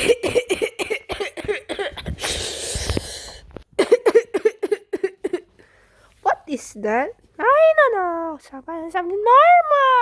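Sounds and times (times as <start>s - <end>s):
person coughing: 0.0s - 2.6s, 3.8s - 5.5s.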